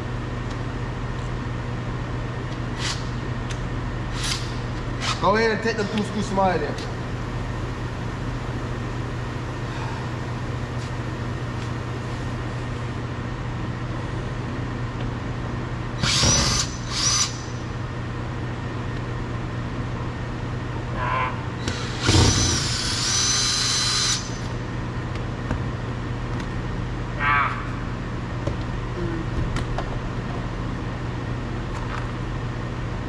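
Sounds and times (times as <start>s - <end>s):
steady low hum: 0.0s - 33.0s
cordless drill whirring: 16.0s - 17.4s, 21.6s - 24.4s.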